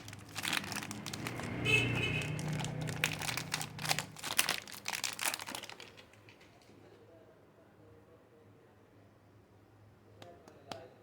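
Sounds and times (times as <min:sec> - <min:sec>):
plastic wrapping crinkling: 0:00.0 - 0:06.7.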